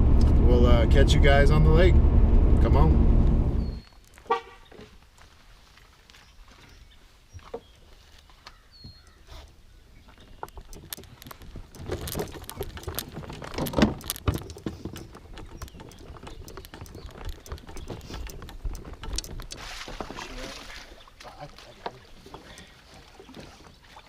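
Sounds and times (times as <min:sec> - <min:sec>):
clicks knocks and rattles: 0:10.4 - 0:20.3.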